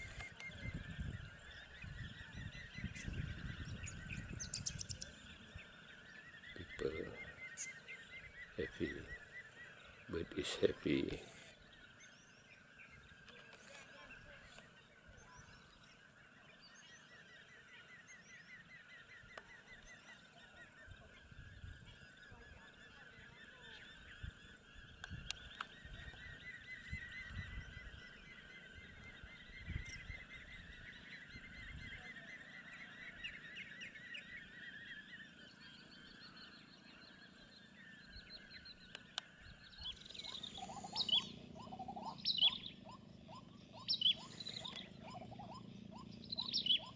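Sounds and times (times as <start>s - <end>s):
wind gusts on microphone: 0.0s - 5.8s, 23.9s - 28.2s, 28.8s - 30.9s
flock of birds honking: 0.0s - 46.9s.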